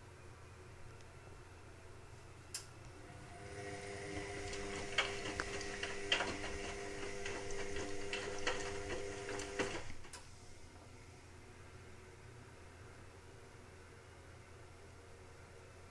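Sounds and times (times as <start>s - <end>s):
mechanical hum: 0.0s - 15.9s
washing machine clicking: 3.4s - 10.3s.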